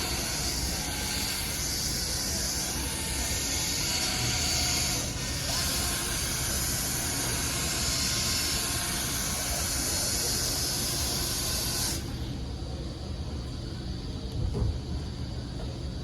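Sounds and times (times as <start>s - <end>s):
cordless buffer whirring: 0.0s - 12.4s.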